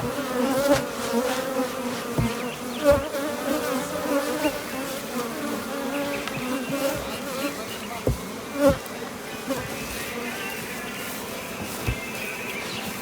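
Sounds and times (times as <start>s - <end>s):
honeybees buzzing: 0.0s - 13.0s
low thumps: 2.1s - 3.2s, 8.0s - 8.9s.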